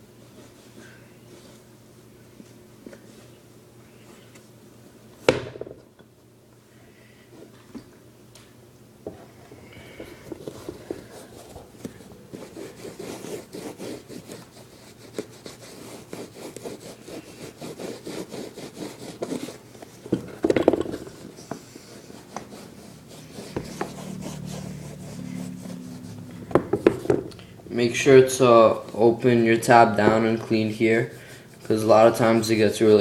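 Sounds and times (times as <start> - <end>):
scrape: 9.8 - 19.6, 21.0 - 27.1
cloth rubbing leather: 10.4 - 20.2, 21.0 - 27.3
low hum: 22.0 - 29.6.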